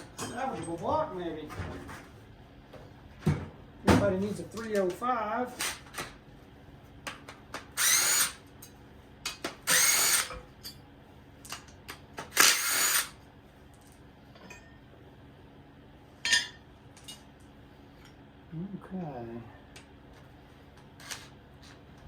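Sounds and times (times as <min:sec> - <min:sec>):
power tool spinning up: 0:07.8 - 0:08.4, 0:09.7 - 0:10.3, 0:12.4 - 0:13.1.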